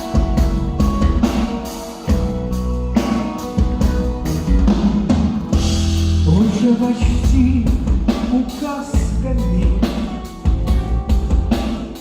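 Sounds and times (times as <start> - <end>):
drum kit and bass: 0.0 - 12.0.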